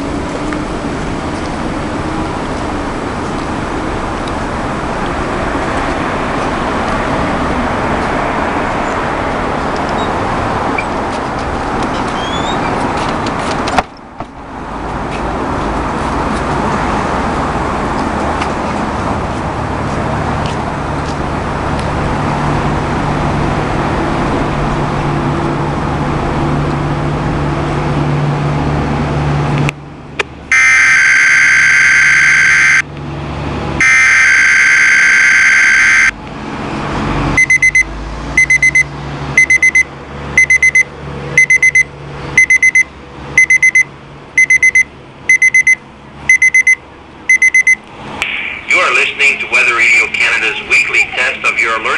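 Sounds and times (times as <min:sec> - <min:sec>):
shrill high tone bursts: 0:30.5 - 0:32.8, 0:33.8 - 0:36.1
radio static hiss: 0:48.2 - 0:51.9.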